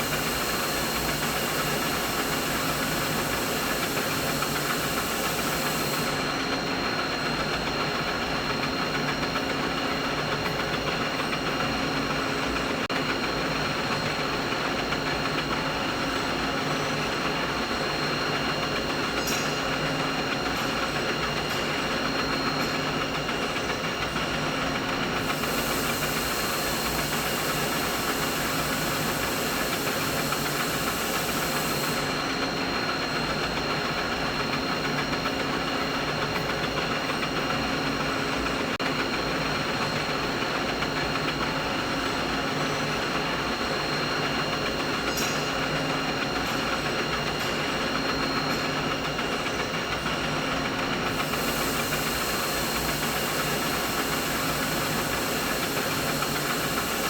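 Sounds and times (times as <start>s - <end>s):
high hiss: 0.0s - 6.2s, 25.2s - 32.2s, 51.1s - 57.0s
machinery hum: 0.0s - 9.6s, 12.5s - 35.5s, 37.7s - 57.0s.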